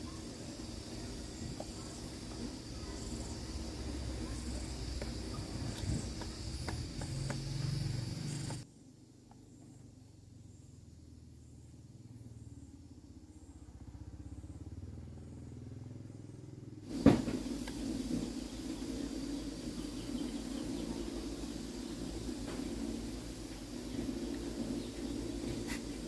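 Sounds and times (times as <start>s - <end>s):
motor rumbling: 12.0s - 26.0s
sharp knock: 17.0s - 17.5s.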